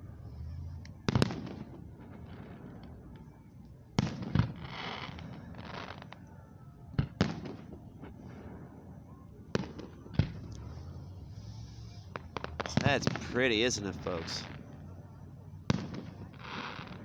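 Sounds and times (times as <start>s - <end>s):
fireworks bangs: 0.2s - 6.2s, 6.9s - 14.8s, 15.6s - 17.0s
fireworks hissing: 10.6s - 14.6s, 15.7s - 17.0s.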